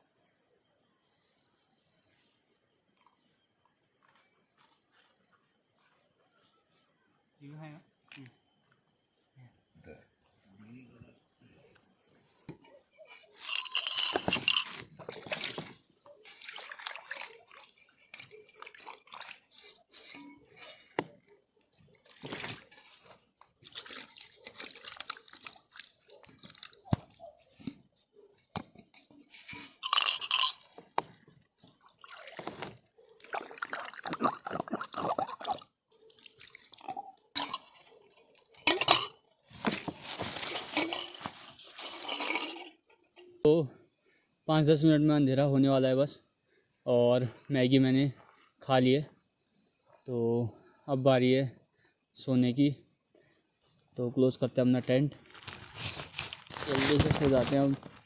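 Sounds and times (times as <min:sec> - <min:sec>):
utensil clinking on metal pot: 0:13.0 - 0:15.4, 0:29.3 - 0:30.8, 0:36.8 - 0:39.2, 0:40.7 - 0:42.7
wet slurping: 0:16.2 - 0:20.2, 0:33.2 - 0:37.1.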